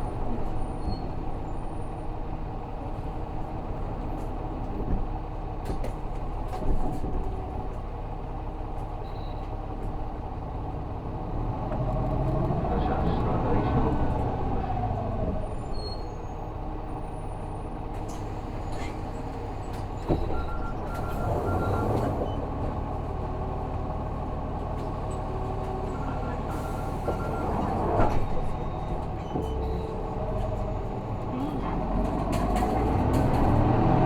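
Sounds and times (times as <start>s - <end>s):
bus diesel engine: 0.0s - 34.0s.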